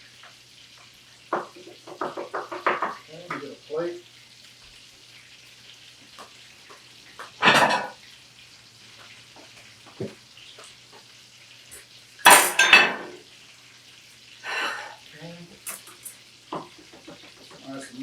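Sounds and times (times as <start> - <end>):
dishes clattering: 1.3 - 3.4, 6.7 - 8.0, 12.2 - 13.2, 15.6 - 17.7.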